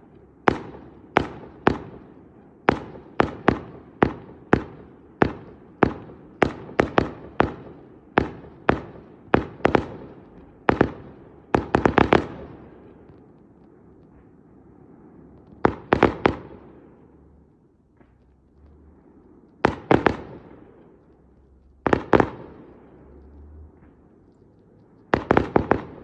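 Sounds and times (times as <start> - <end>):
fireworks bangs: 0.0 - 13.4, 19.6 - 24.4, 25.0 - 26.0.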